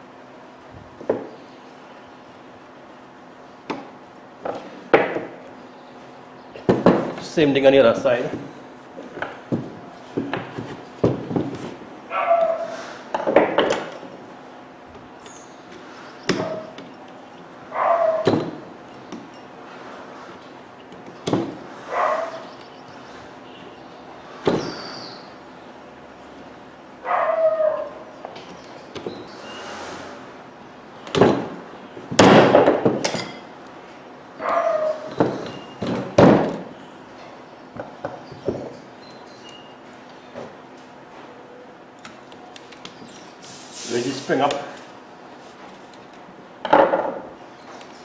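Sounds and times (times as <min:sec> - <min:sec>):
dog barking: 0:12.1 - 0:12.8, 0:17.7 - 0:18.3, 0:21.9 - 0:22.5, 0:27.0 - 0:28.0, 0:34.4 - 0:35.1.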